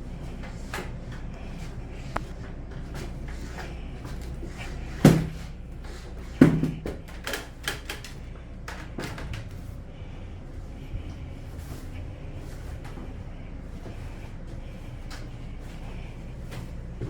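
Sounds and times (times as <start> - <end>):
steady low hum: 0.0 - 17.0
light clicks and clatters: 6.7 - 9.8.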